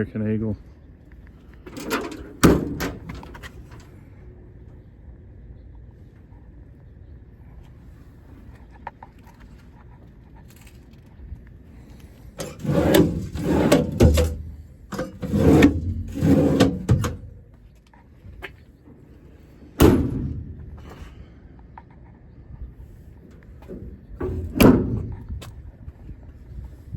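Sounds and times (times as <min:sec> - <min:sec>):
metal door slamming: 0:01.7 - 0:03.8, 0:12.4 - 0:17.4, 0:19.8 - 0:21.0, 0:24.2 - 0:25.3
metal drawers rattling: 0:01.7 - 0:03.9, 0:12.4 - 0:17.5, 0:19.8 - 0:20.9, 0:23.7 - 0:25.3.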